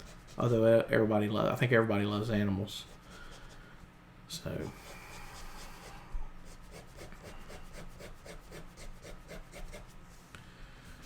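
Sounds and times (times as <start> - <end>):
pencil scratching on paper: 0.0 - 0.6, 4.7 - 10.0.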